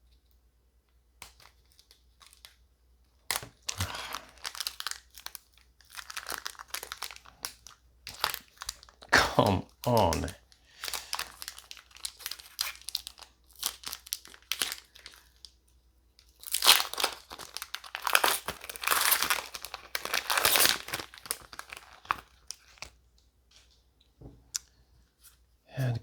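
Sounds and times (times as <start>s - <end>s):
foil wrapper crinkling and tearing: 1.2s - 2.6s, 3.2s - 15.6s, 16.2s - 23.0s.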